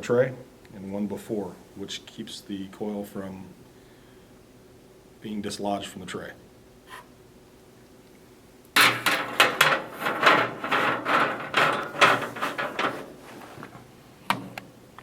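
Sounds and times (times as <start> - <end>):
metal parts clattering and scraping: 8.8 - 13.8.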